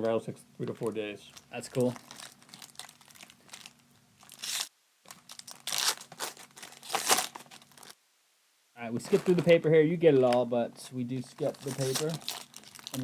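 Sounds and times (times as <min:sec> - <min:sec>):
foil wrappers tearing and crinkling: 0:01.3 - 0:08.0, 0:09.0 - 0:09.6, 0:11.1 - 0:13.0.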